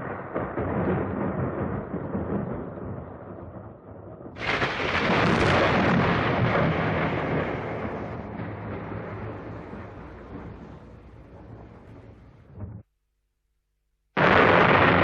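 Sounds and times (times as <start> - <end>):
thunderclap: 0.0 - 12.8, 14.2 - 15.0.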